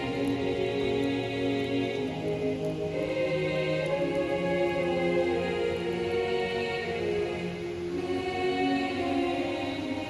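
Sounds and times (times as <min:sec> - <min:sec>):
calm instrumental music: 0:00.0 - 0:10.0.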